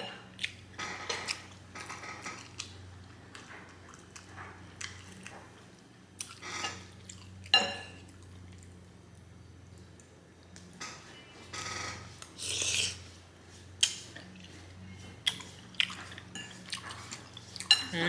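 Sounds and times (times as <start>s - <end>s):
wet chewing: 2.3s - 6.4s, 13.8s - 18.0s.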